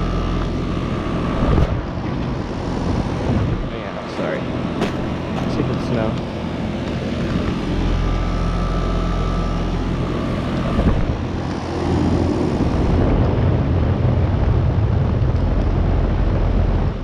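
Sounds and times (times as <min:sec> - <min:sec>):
fan noise: 0:00.0 - 0:17.0
heat pump compressor hum: 0:00.0 - 0:17.0.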